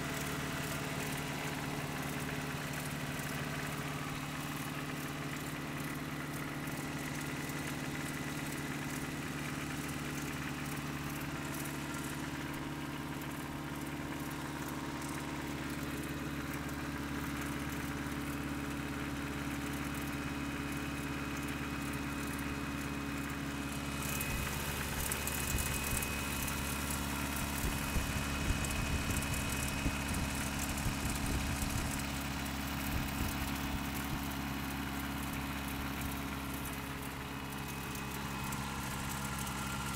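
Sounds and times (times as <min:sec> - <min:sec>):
engine idling with knocking clatter: 0:00.0 - 0:39.9.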